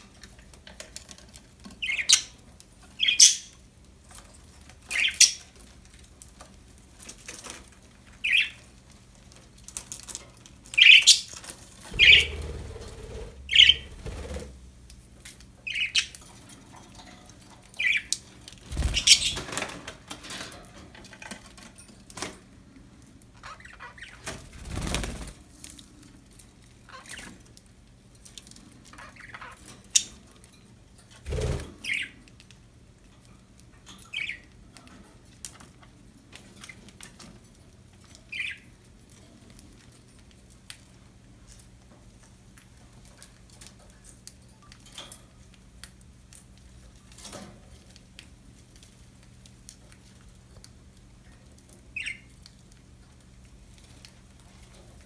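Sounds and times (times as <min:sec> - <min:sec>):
birds clicking and scratching in cage: 0:00.1 - 0:55.0
budgie chirps: 0:11.9 - 0:14.0.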